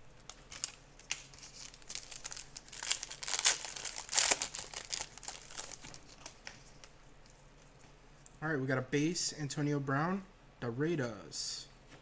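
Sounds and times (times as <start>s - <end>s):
foil wrapper crinkling: 0.2s - 6.9s.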